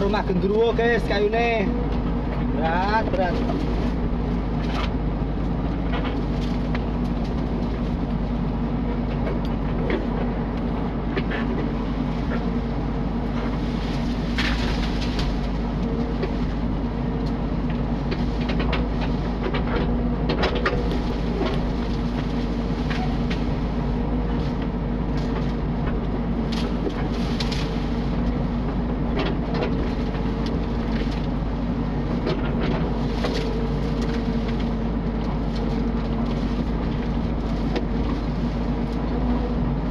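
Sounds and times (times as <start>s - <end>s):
diesel engine running: 0.0s - 39.9s
short knocks and cracks: 13.8s - 16.5s.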